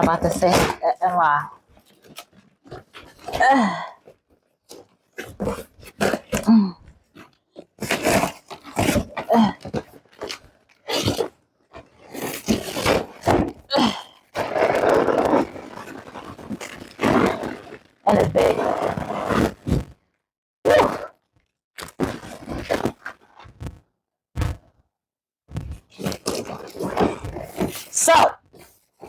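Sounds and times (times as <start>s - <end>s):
person grunting: 3.4s - 4.0s
cardboard box scraping and rustling: 7.8s - 10.4s, 12.0s - 13.6s, 14.4s - 17.8s, 26.0s - 28.8s.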